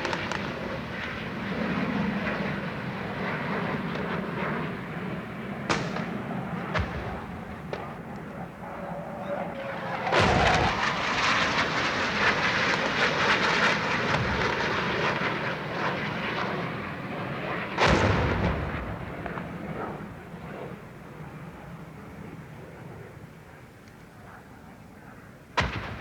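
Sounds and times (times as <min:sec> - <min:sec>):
aircraft noise: 0:00.0 - 0:17.9.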